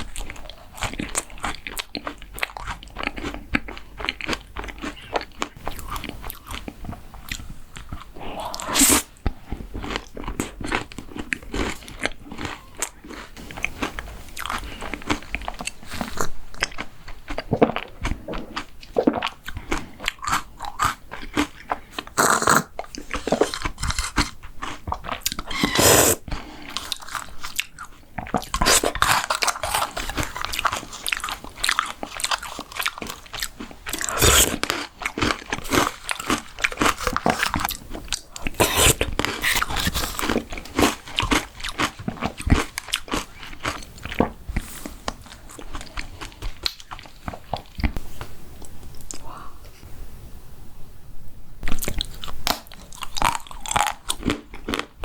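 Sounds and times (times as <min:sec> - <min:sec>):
crunchy chewing: 0:00.0 - 0:48.0, 0:51.7 - 0:55.0
loud crunchy bites: 0:22.2 - 0:27.8, 0:28.4 - 0:43.8, 0:52.4 - 0:54.9.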